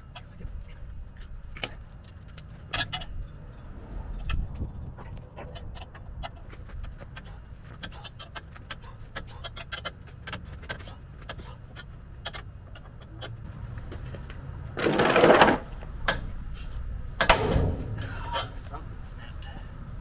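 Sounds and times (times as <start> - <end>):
metal rattling scrape: 14.8 - 15.8, 16.6 - 18.8.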